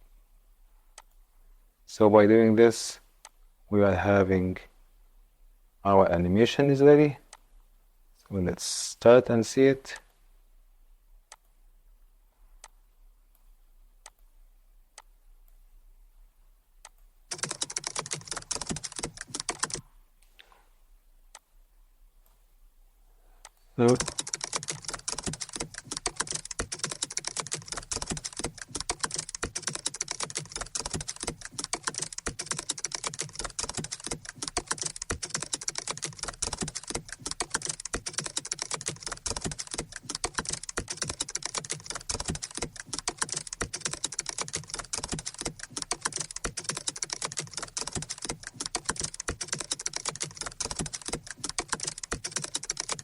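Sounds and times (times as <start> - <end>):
rapid typing key clicks: 16.8 - 19.8, 23.8 - 53.0.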